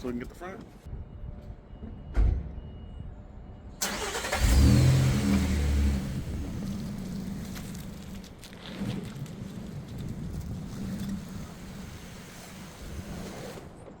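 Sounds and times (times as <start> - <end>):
thump: 2.1 - 2.6
van engine cranking and idling: 3.8 - 9.7.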